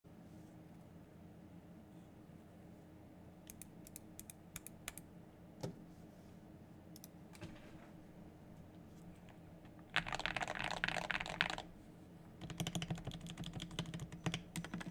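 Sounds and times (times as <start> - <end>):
mechanical keyboard key presses: 9.9 - 11.7, 12.4 - 14.9.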